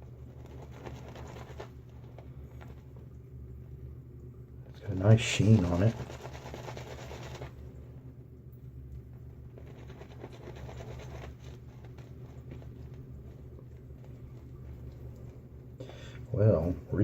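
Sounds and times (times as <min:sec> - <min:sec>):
shaving brush squishing lather: 0:00.0 - 0:02.9, 0:04.8 - 0:07.6, 0:09.4 - 0:15.8
steady low hum: 0:00.0 - 0:17.0.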